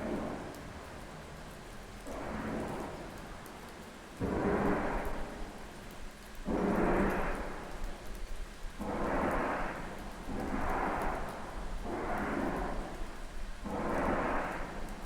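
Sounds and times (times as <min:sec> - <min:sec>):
rumbling blaring tone from the sky: 0:06.5 - 0:15.0.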